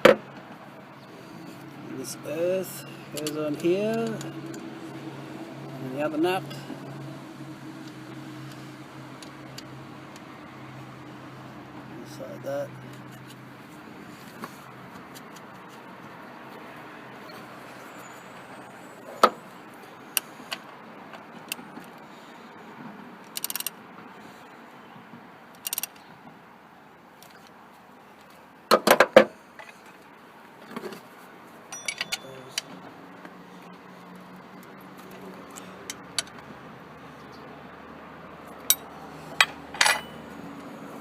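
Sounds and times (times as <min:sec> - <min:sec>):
metal tools clinking: 0:31.7 - 0:32.8, 0:38.6 - 0:40.2.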